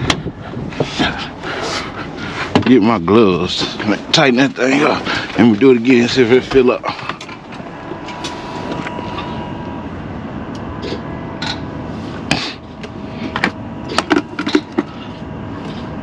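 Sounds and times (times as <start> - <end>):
fuel pump hum with whine: 0.0 - 16.0.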